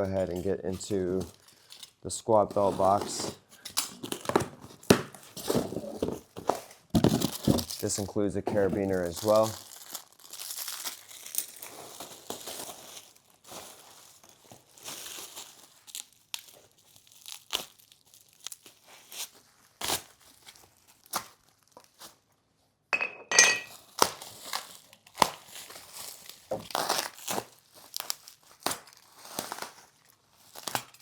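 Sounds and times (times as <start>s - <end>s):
plastic packaging crinkling: 0.0s - 22.3s, 23.7s - 31.0s
items being handled knocks: 4.2s - 7.7s, 23.0s - 23.7s
short metallic clink: 23.0s - 23.7s.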